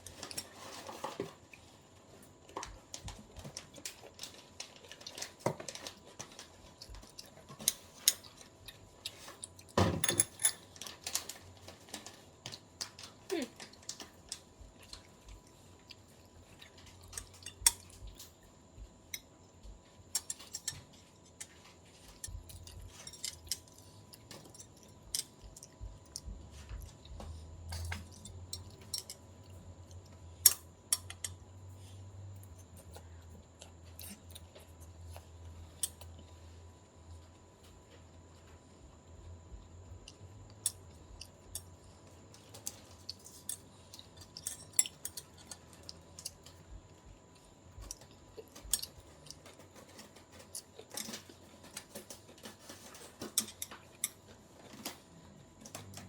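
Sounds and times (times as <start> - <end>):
utensils clattering: 9.8 - 11.4
chewing: 10.6 - 18.4, 31.0 - 37.8
utensils clicking against dish: 20.1 - 26.3, 42.5 - 46.6, 47.9 - 55.0.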